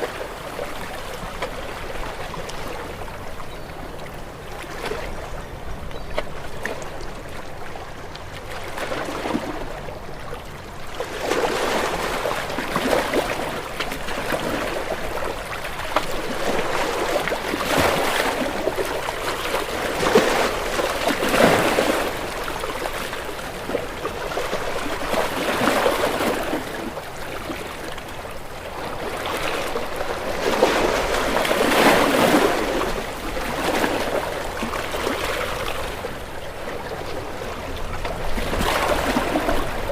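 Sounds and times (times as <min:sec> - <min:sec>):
ocean waves washing against rocks: 0:11.0 - 0:39.9
waves crashing: 0:11.0 - 0:39.9.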